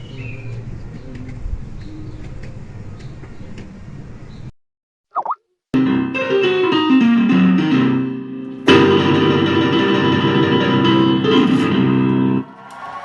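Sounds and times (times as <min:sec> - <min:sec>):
guitar notes stepping down: 0:08.4 - 0:12.4
guitar strummed chord: 0:08.6 - 0:12.4.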